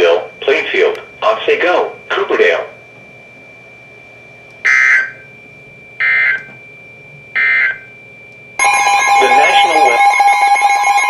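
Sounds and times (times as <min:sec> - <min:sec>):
loud alert tone: 0:08.6 - 0:11.0.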